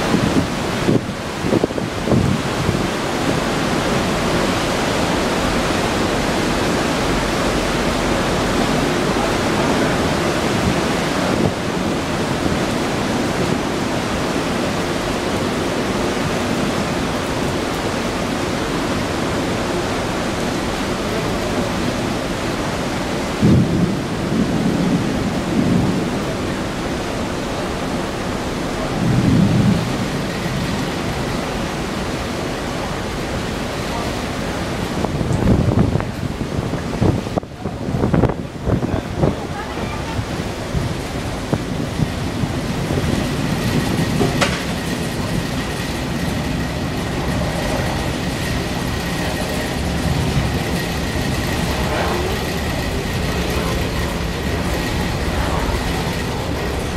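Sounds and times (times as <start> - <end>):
wind noise: 0.0 - 20.4, 34.5 - 56.9
steady rain: 0.0 - 56.9
low rumbles of thunder: 23.4 - 26.8, 28.9 - 30.8.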